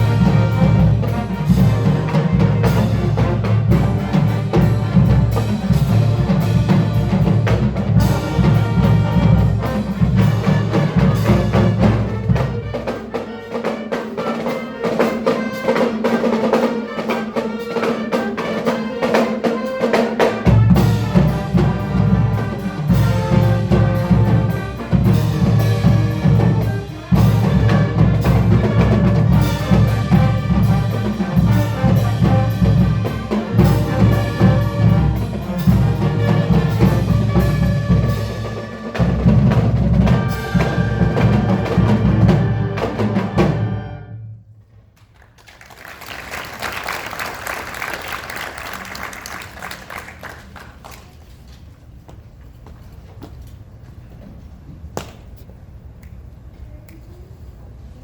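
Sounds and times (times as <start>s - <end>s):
marching band playing: 0.0s - 44.6s, 45.6s - 50.9s
crowd applause: 45.1s - 51.2s.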